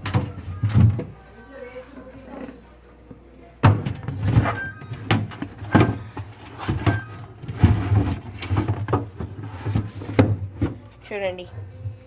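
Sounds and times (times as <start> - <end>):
plastic containers knocking: 3.6 - 10.8.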